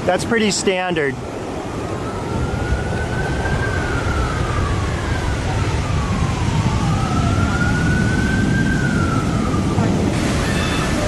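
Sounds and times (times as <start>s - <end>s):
surf and wind rush: 0.0s - 11.0s
ambulance siren wailing: 0.1s - 11.0s.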